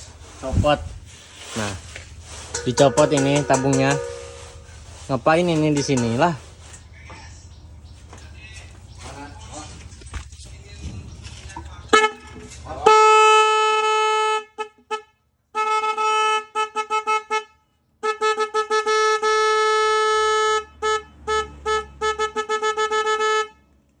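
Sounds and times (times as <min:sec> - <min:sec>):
truck horn blasts and toots: 0:12.0 - 0:23.8.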